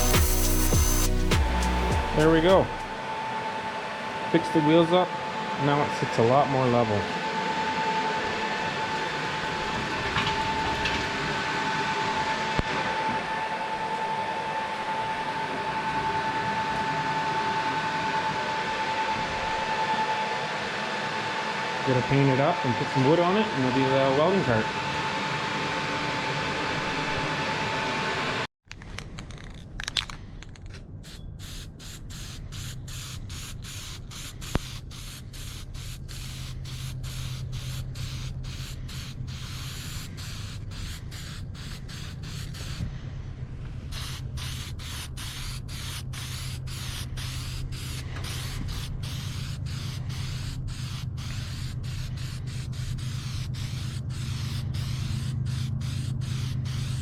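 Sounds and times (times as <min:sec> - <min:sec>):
spray paint hissing on metal: 0:00.0 - 0:02.9, 0:31.0 - 0:42.9, 0:43.9 - 0:57.0
low steady hum: 0:28.8 - 0:57.0.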